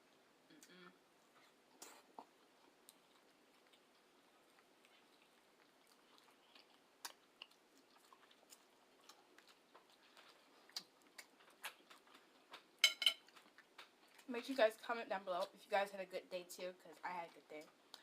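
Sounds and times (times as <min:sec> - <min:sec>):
chewing and wet mouth clicks: 0:01.8 - 0:14.3, 0:17.3 - 0:18.0.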